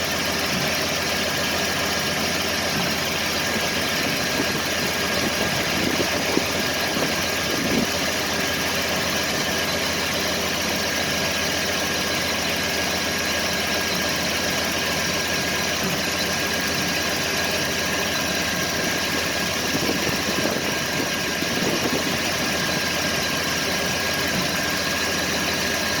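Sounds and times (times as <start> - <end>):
car engine idling: 0.0 - 26.0
engine thumps and pops: 2.0 - 8.0, 15.6 - 17.1, 18.1 - 26.0.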